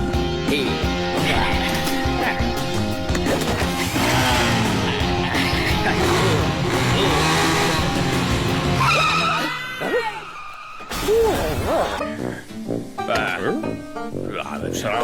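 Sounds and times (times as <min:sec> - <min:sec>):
tyres skidding: 0:01.8 - 0:11.2
quad bike engine revving: 0:03.2 - 0:09.4.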